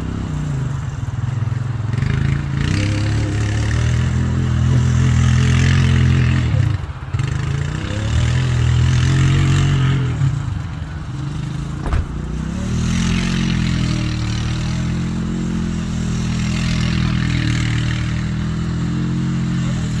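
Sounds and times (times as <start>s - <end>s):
sharp click: 11.8s - 12.3s.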